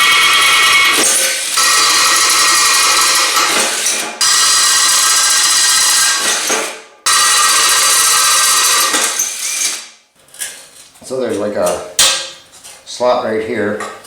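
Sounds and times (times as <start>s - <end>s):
electric drill drilling steel: 0.0s - 9.9s.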